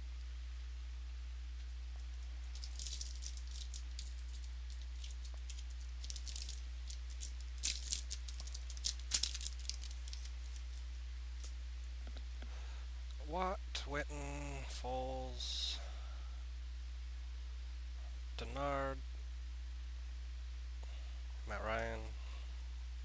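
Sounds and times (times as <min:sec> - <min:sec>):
low electrical hum: 0:00.0 - 0:23.0
trading cards flipping: 0:02.5 - 0:11.6.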